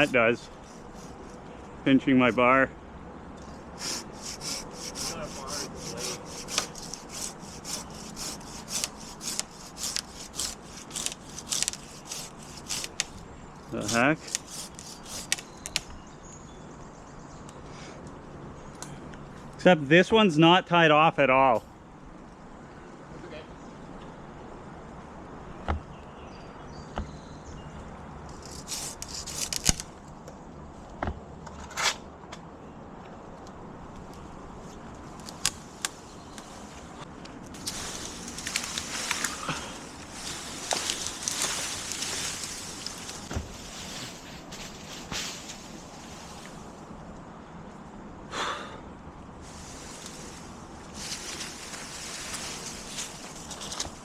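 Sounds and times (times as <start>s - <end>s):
branches rustling and scraping: 0.0s - 2.6s, 3.4s - 16.3s, 27.0s - 32.1s, 33.2s - 47.2s, 49.4s - 54.0s
hand saw cutting wood: 3.8s - 15.8s, 28.3s - 29.9s.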